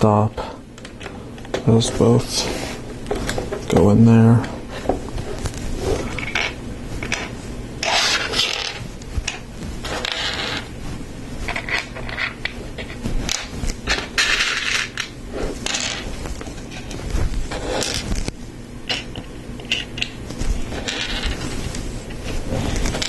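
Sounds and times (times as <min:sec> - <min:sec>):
plastic parts rubbing and scraping: 0:04.7 - 0:10.7, 0:11.4 - 0:18.3, 0:18.9 - 0:23.0.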